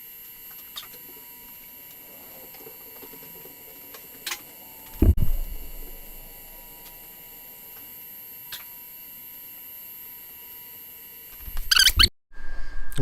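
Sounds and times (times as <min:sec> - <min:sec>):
faint high whine: 0:00.0 - 0:13.0
low steady hum: 0:00.4 - 0:08.4
dull thump: 0:05.0 - 0:06.7.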